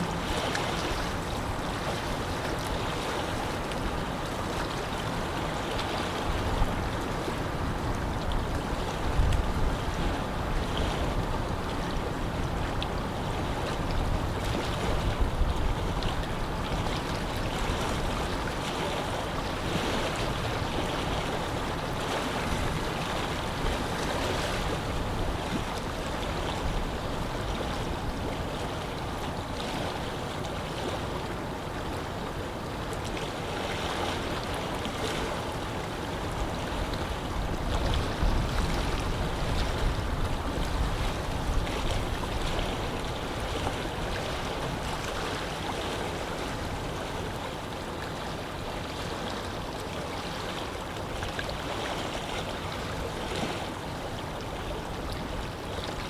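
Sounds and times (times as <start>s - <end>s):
waves lapping at shore: 0.0s - 56.0s
low rumbling wind gusts: 36.4s - 45.3s.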